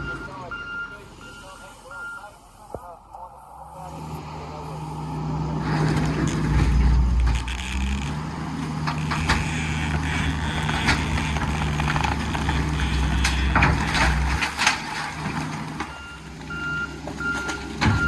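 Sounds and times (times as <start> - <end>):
diesel engine droning under load: 0.0 - 18.0
sharp knocks and cracks: 6.4 - 15.6.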